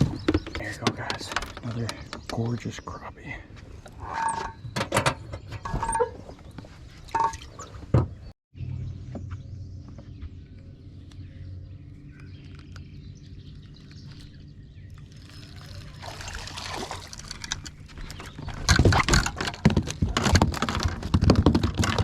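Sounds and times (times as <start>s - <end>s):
fish thrashing and splashing: 15.0s - 19.5s
knocks in boat: 18.4s - 22.0s.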